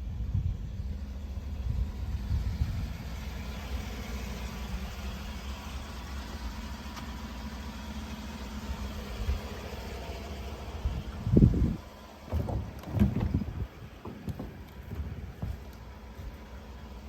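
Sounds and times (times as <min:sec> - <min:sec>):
wind buffeting microphone: 0:00.0 - 0:03.2, 0:10.7 - 0:16.4
pickup truck engine idling: 0:00.0 - 0:17.0.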